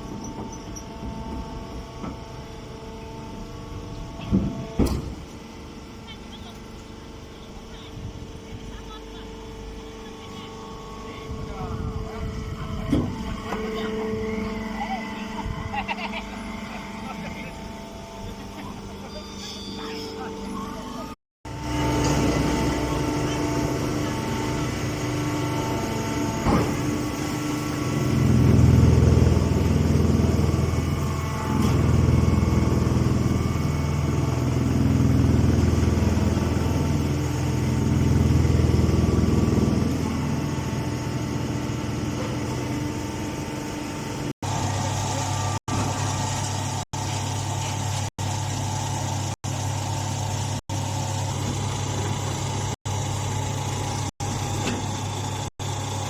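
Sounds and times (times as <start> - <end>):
hay baler engine running: 21.5 - 56.0.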